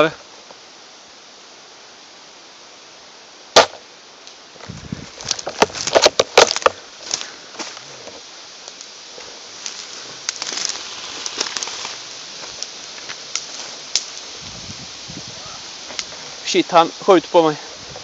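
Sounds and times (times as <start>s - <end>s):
airsoft gunfire: 3.6s - 3.8s.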